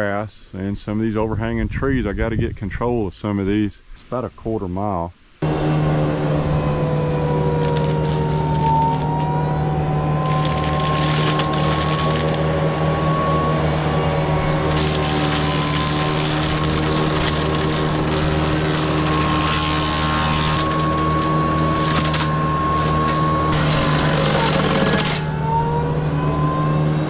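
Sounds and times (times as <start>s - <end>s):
tractor engine drone: 5.4s - 27.0s
mulcher chewing through brush: 7.6s - 9.4s, 10.2s - 12.6s, 14.4s - 25.3s.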